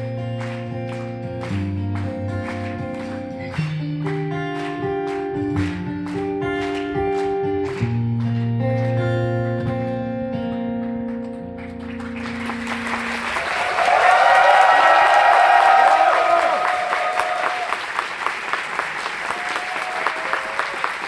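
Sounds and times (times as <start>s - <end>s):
guitar strumming: 0.0s - 12.3s.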